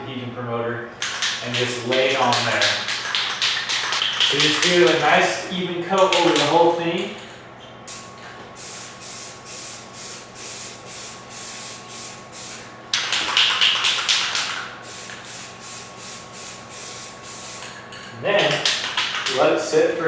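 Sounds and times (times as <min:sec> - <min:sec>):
aerosol can spraying hiss: 0:08.6 - 0:12.6, 0:13.5 - 0:17.7.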